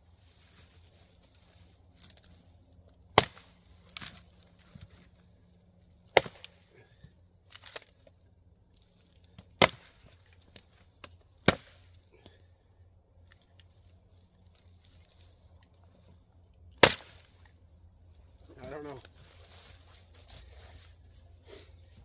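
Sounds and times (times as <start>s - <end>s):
axe splitting firewood: 3.1s - 5.1s, 6.0s - 8.2s, 9.2s - 12.5s, 16.8s - 17.6s.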